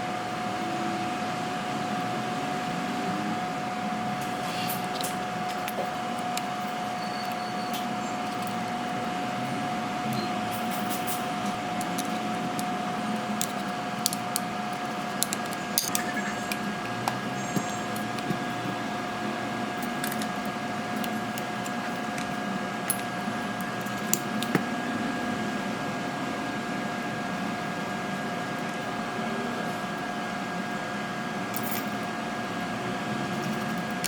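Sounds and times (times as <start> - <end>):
machine hum with whine: 0.0 - 34.0
sharp clicks and taps: 11.8 - 18.4.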